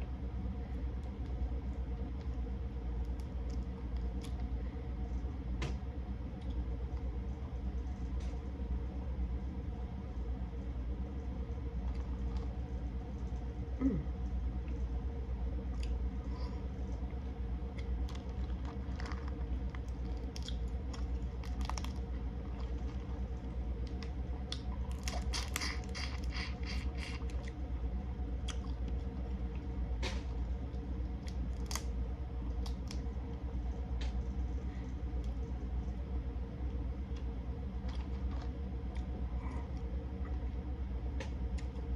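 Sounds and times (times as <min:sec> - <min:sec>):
steady low hum: 0:00.0 - 0:41.9
wet squishing and crunching: 0:15.6 - 0:40.6
shellfish shells cracking: 0:31.3 - 0:31.9.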